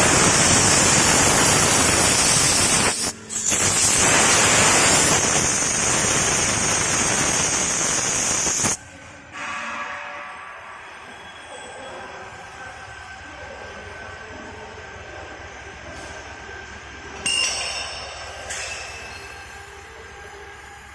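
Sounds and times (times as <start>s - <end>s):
cnc router hissing: 0.0s - 8.8s.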